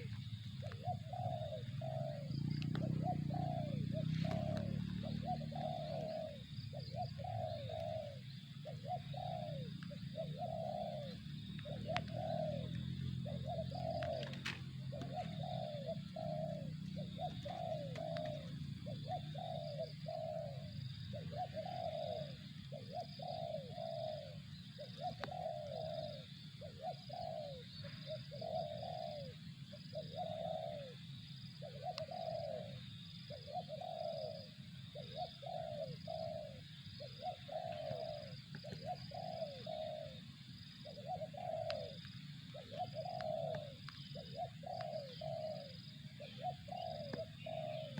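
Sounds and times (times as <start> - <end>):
dove cooing: 0.0 - 47.9.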